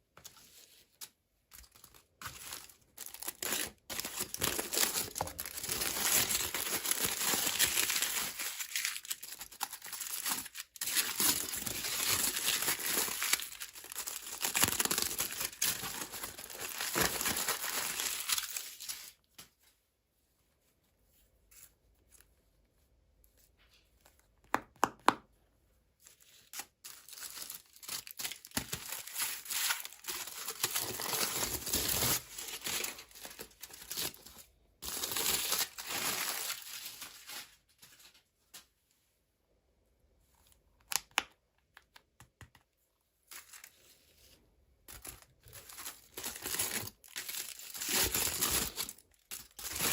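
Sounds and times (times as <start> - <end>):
packaging tearing and crinkling: 1.7 - 19.1, 26.6 - 34.2, 34.8 - 37.6, 45.0 - 49.9.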